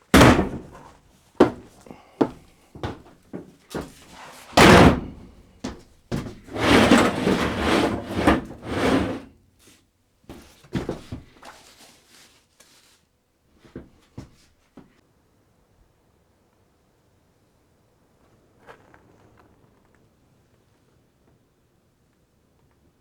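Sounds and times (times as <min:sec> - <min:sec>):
knocks: 0:00.2 - 0:01.6, 0:04.6 - 0:06.3
scraping and rustling: 0:00.2 - 0:01.6, 0:03.8 - 0:09.3.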